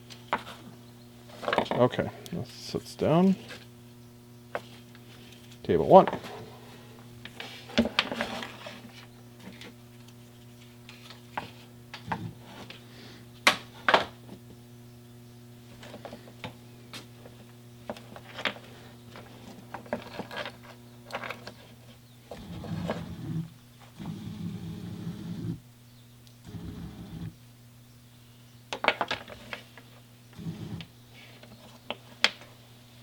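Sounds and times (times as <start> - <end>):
steady low hum: 0.0 - 33.0
rough low rumbling: 22.4 - 25.6.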